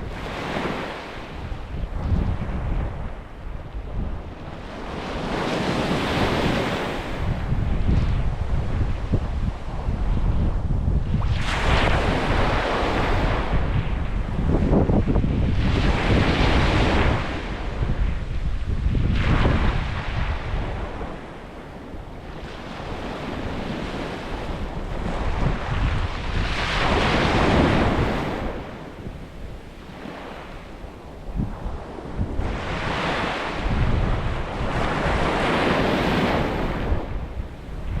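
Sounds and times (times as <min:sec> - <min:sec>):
ocean waves breaking: 0:00.0 - 0:08.6, 0:11.3 - 0:14.1, 0:19.1 - 0:38.0
wind buffeting microphone: 0:00.0 - 0:38.0.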